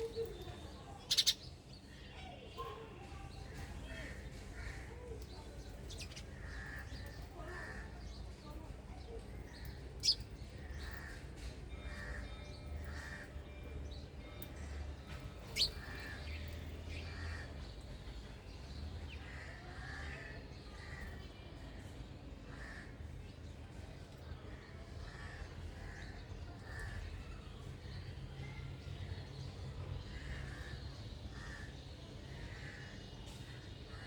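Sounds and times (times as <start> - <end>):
birds calling: 0.0 - 1.6, 9.4 - 13.6, 15.1 - 17.7.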